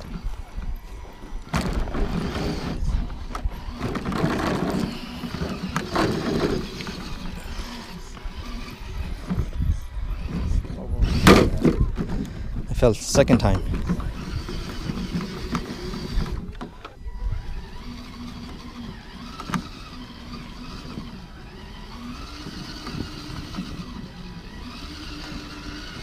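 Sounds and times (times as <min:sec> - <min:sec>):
electric motor whining: 0:00.0 - 0:26.0.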